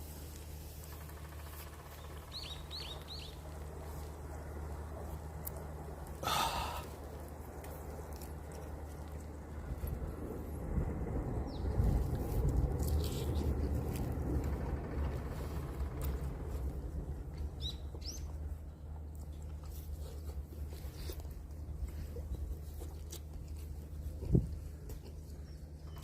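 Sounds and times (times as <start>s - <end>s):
low outdoor rumble: 0.0s - 26.0s
bird chirps: 1.9s - 3.4s.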